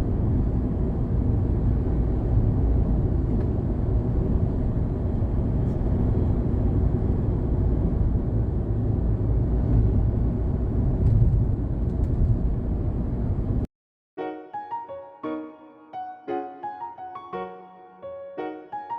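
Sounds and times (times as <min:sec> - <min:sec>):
car engine running with low rumble: 0:00.0 - 0:13.7.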